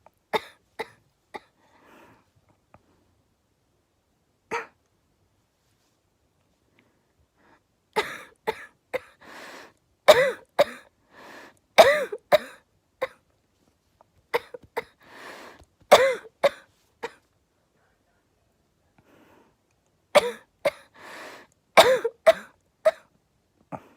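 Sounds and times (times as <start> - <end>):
girl coughing: 0.4 - 1.5, 4.5 - 4.8, 8.0 - 9.2, 10.1 - 10.9, 11.8 - 13.2, 14.4 - 15.0, 15.9 - 17.2, 20.2 - 20.9, 21.8 - 23.1
noisy in-breath: 1.6 - 2.3, 9.2 - 9.8, 11.1 - 11.6, 15.0 - 15.6, 19.0 - 19.6, 20.9 - 21.6.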